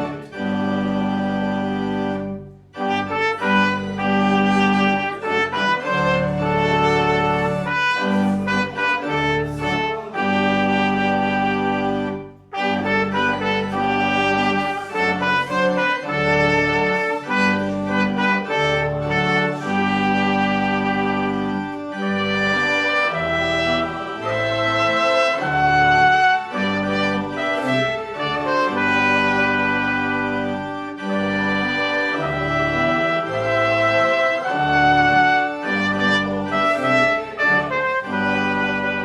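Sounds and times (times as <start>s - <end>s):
church music sustained chords: 0.0s - 39.0s.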